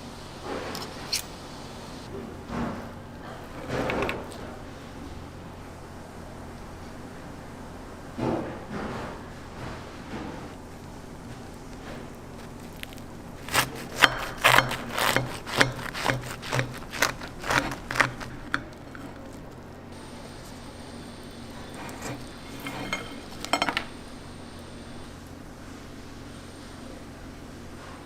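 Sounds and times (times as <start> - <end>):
scraping on hard surface: 13.4 - 19.6, 21.5 - 23.9.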